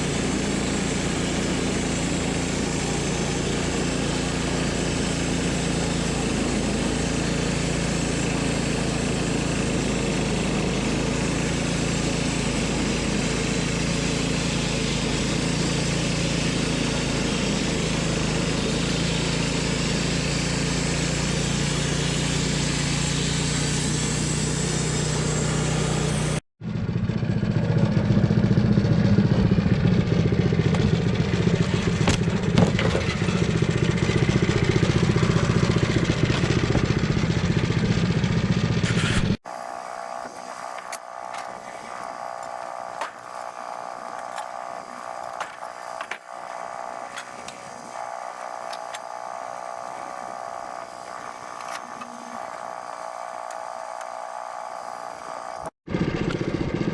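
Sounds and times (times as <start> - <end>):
small gasoline engine running: 0.0 - 56.9.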